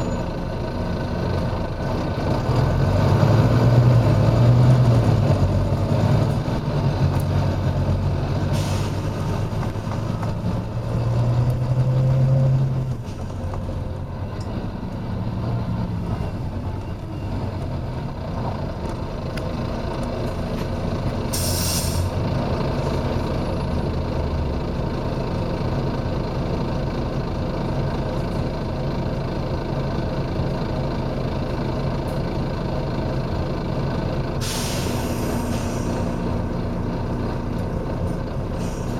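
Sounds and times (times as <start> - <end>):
bus diesel engine running: 0.0 - 38.9
compressed air hissing: 21.3 - 22.1, 34.4 - 36.1.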